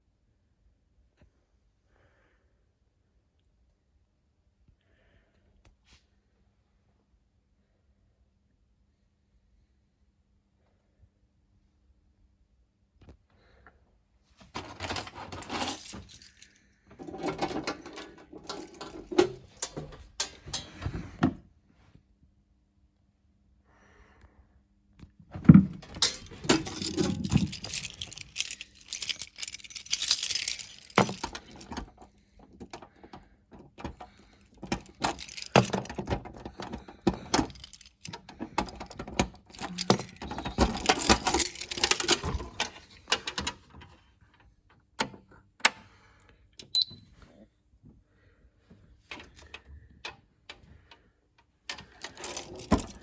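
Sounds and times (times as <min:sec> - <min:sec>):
keys clicking and rattling: 0:14.6 - 0:21.1, 0:25.5 - 0:32.9, 0:33.5 - 0:43.5, 0:51.7 - 0:53.0.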